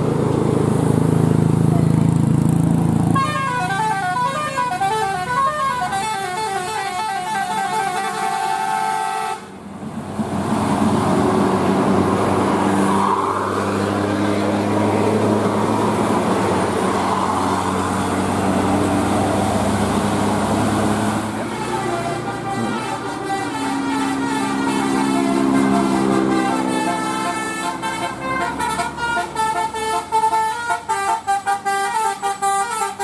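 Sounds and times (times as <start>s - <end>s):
bus engine running: 0.0s - 33.0s
melodic bus air horn: 3.1s - 9.6s, 16.4s - 33.0s.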